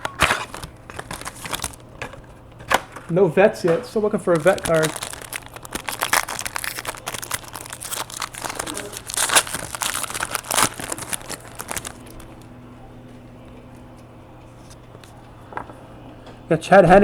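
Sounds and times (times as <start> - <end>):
plastic wrapping crinkling: 0.0 - 3.1, 3.9 - 12.5
faint steady hum: 0.0 - 17.0.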